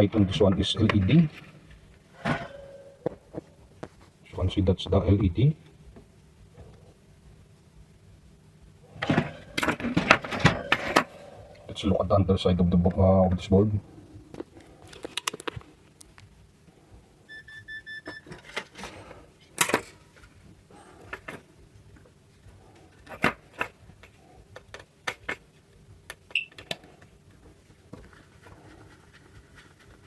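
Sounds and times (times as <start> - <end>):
short beeping tone: 17.3 - 18.3.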